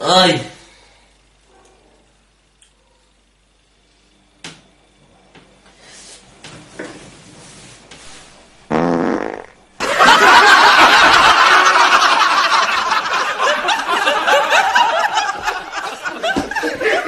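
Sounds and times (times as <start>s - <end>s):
crowd laughing: 9.8s - 17.0s.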